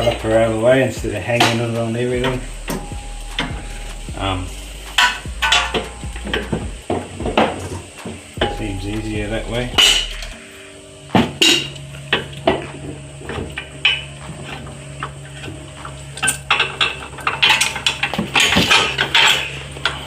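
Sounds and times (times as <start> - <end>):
metal tools clinking: 13.6 - 20.0.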